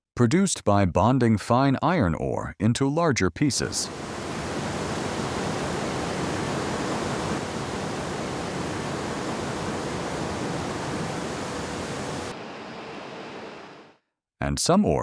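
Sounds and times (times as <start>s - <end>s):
steady rushing noise: 3.8s - 13.9s.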